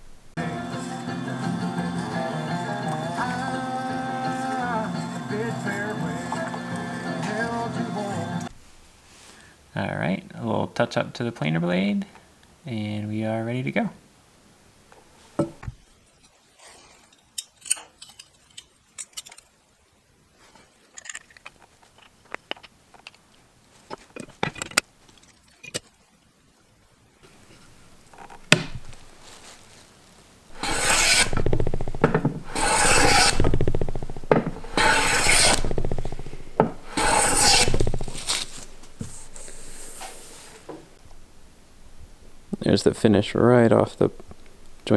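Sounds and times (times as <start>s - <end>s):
hand plane scraping wood: 0.4s - 8.5s, 30.5s - 40.6s.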